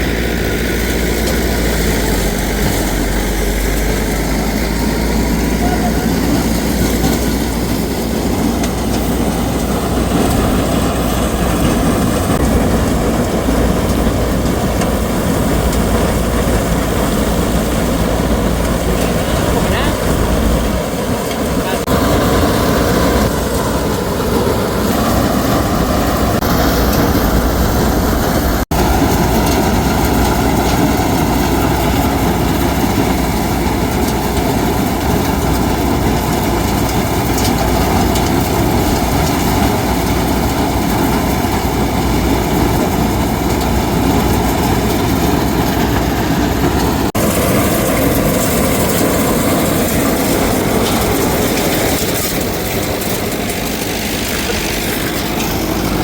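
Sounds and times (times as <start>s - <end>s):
engine running with low rumble: 0.0s - 56.0s.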